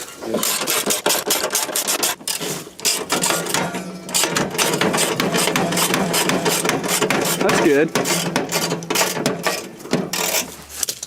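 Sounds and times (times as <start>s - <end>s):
steady low hum: 2.2s - 10.7s.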